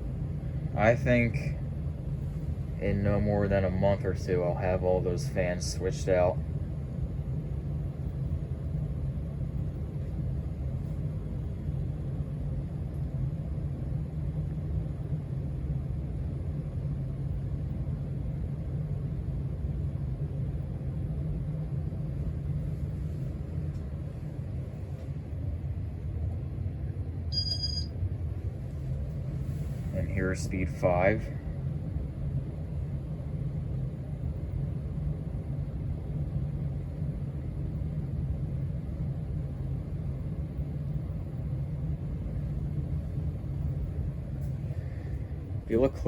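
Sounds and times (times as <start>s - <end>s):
ceiling fan humming: 0.0s - 46.0s
short high beep: 27.3s - 27.9s.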